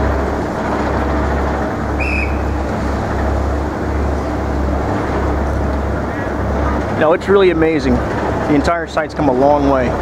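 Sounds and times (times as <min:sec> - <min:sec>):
city traffic: 0:00.0 - 0:10.0.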